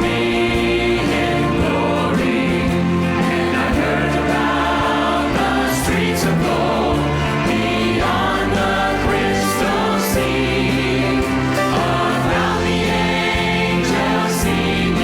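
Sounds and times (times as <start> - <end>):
band playing worship music: 0.0 - 15.0
group of voices singing: 0.0 - 15.0.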